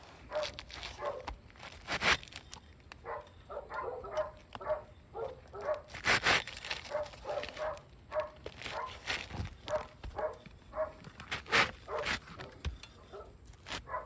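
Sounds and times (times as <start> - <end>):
scraping rustles: 0.0 - 14.0
dog yipping: 0.3 - 1.3, 3.1 - 5.9, 6.9 - 9.0, 9.6 - 12.2, 13.0 - 14.0.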